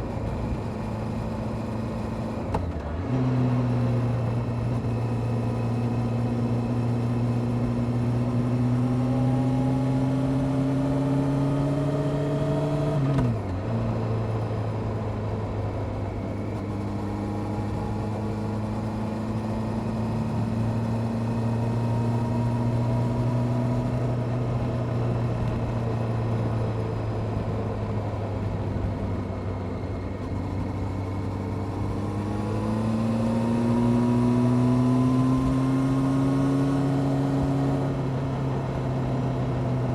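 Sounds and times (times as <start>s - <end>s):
motorcycle engine revving: 31.6s - 39.9s.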